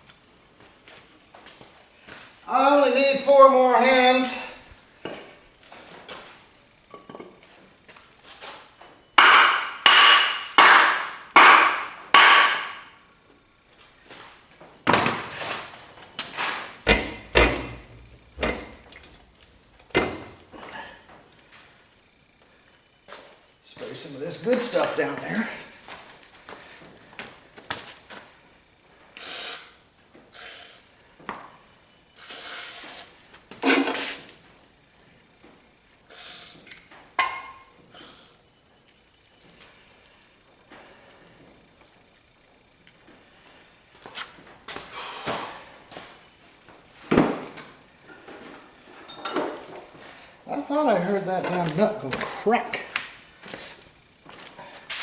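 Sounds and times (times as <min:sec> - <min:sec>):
hammer striking steel: 0:09.2 - 0:12.9, 0:16.9 - 0:20.6.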